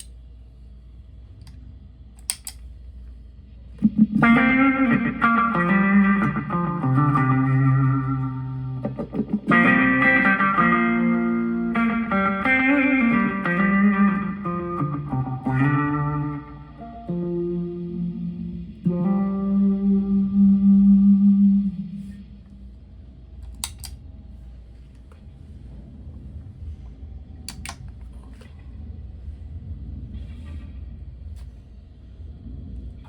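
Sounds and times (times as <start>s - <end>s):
clicks: 0.0s - 0.2s, 2.2s - 2.7s, 23.4s - 24.0s, 27.5s - 28.6s
low hum: 0.0s - 33.0s
electric guitar notes and chords: 3.8s - 22.5s.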